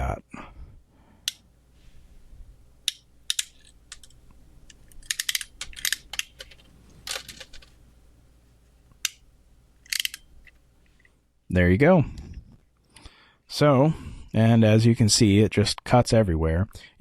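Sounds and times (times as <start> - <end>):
crimping tool clicks and snaps: 2.9 - 7.6, 9.8 - 10.2.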